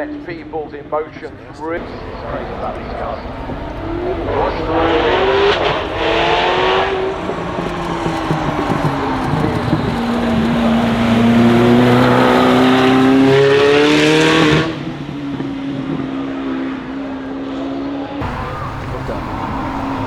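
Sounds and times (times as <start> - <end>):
car engine accelerating hard: 1.8 - 20.0.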